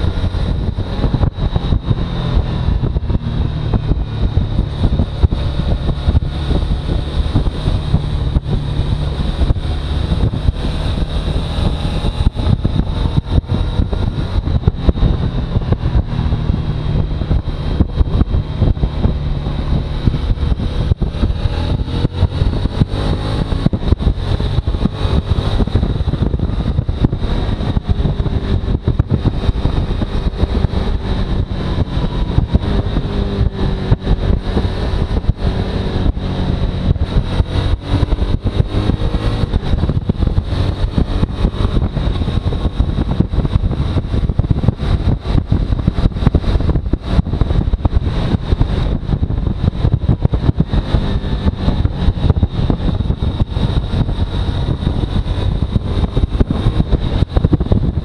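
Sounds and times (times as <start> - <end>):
rough motorcycle engine running: 0.0 - 58.0.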